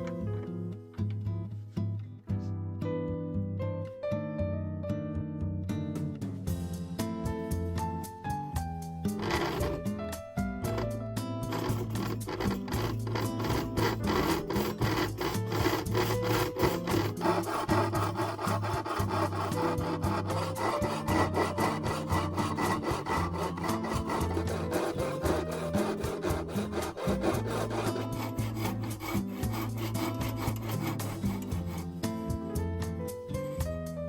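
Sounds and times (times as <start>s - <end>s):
background music: 5.4s - 34.0s
hand saw cutting wood: 9.1s - 32.4s.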